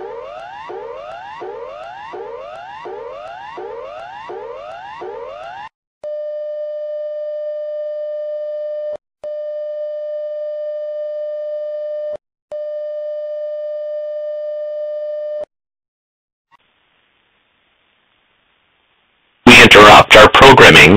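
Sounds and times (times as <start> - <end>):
rising whooping alert sweeps: 0.0 - 5.7.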